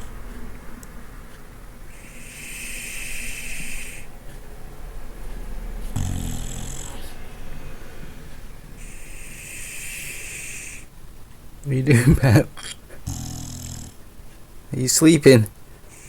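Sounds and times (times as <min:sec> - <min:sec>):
dog snoring: 0:01.9 - 0:04.1, 0:05.8 - 0:07.4, 0:08.8 - 0:10.9, 0:13.0 - 0:14.0
dog hissing breath: 0:01.9 - 0:04.2, 0:05.8 - 0:07.5, 0:08.8 - 0:10.9, 0:15.8 - 0:16.0.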